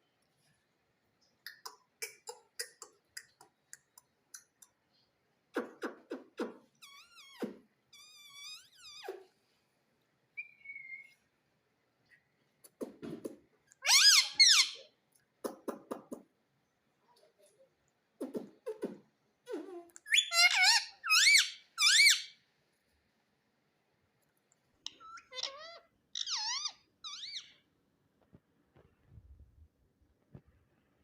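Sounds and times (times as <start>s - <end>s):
parrot squawking: 13.8s - 14.9s, 20.0s - 22.4s, 24.8s - 27.6s.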